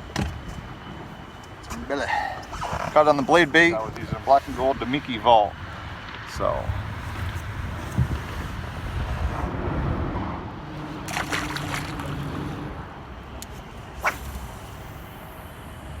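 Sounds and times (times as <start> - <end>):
low wind rumble: 0.0 - 16.0
river water sloshing and trickling: 10.8 - 12.7.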